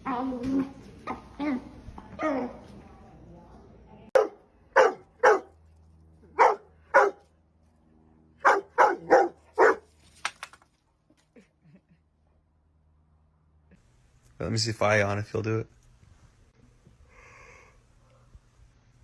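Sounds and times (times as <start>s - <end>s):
dog barking: 4.2s - 5.6s, 6.3s - 7.3s, 8.4s - 9.9s.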